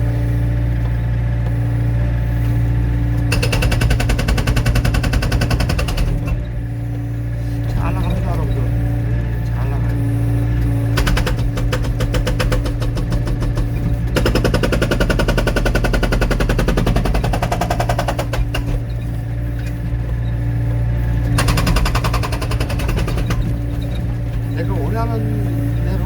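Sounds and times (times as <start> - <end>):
diesel engine humming: 0.0 - 26.0
hydraulic breaker hammering wood: 3.2 - 6.7, 10.6 - 25.8.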